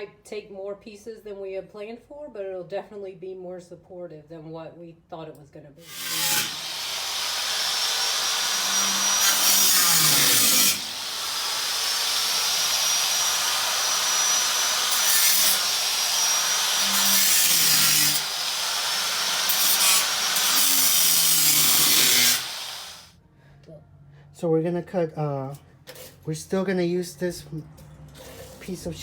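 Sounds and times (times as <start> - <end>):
power tool cutting sheet metal: 5.8 - 23.1.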